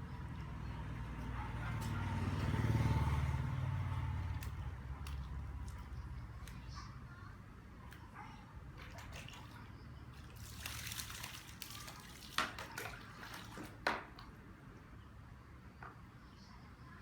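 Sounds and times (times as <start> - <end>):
water splashing and trickling: 0.1 - 7.1, 8.6 - 14.9.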